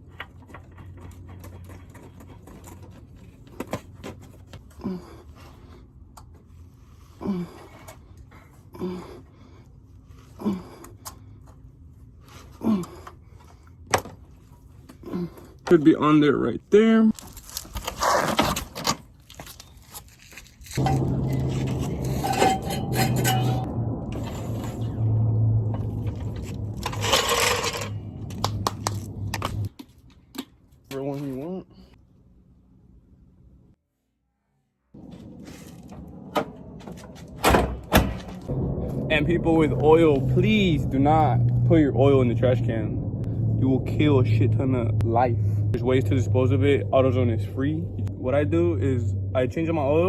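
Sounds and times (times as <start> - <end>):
metal tools clinking: 20.8 - 23.7, 26.4 - 28.2
tools scraping metal: 20.8 - 23.7
low hum: 20.8 - 29.7, 35.0 - 50.0.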